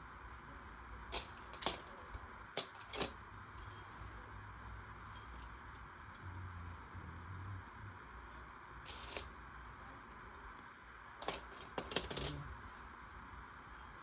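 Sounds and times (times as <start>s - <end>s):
plastic pieces clicking: 1.1s - 3.2s, 8.9s - 9.3s, 11.2s - 12.4s.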